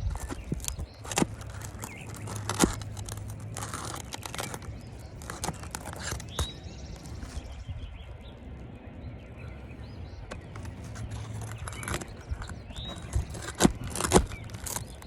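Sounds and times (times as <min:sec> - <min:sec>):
metal scraper clicking: 0:00.0 - 0:07.2, 0:10.3 - 0:15.0
scraping and crackling shingles: 0:00.0 - 0:07.6, 0:09.5 - 0:15.0.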